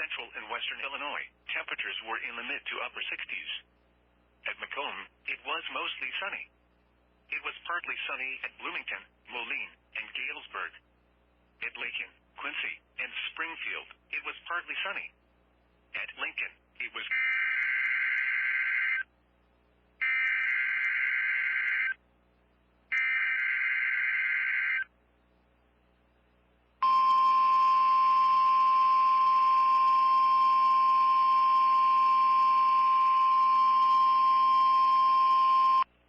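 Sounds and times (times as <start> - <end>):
warning alarm tone: 22.9 - 24.9, 26.8 - 35.9.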